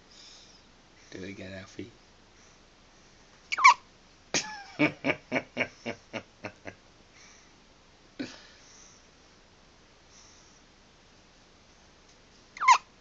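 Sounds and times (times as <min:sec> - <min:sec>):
baby hiccup with squeak: 0:03.5 - 0:03.8, 0:12.6 - 0:12.9
person laughing: 0:04.4 - 0:06.8.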